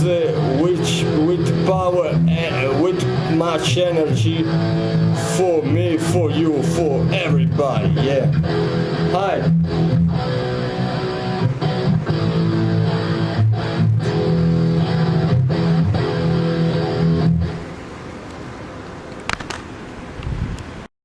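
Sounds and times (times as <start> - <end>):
rock backing track: 0.0 - 17.7.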